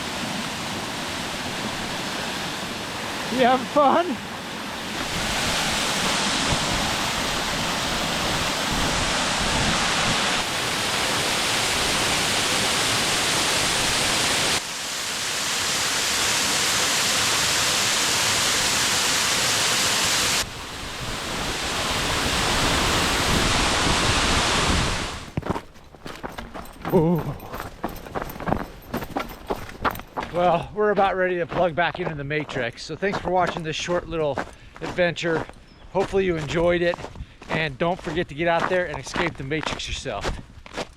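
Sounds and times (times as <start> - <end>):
waterfall rushing: 0.0 - 25.3.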